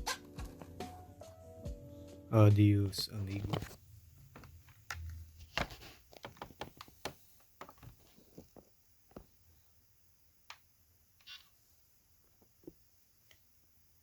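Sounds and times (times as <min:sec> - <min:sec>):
laptop keyboard clicks and taps: 0:04.4 - 0:08.0.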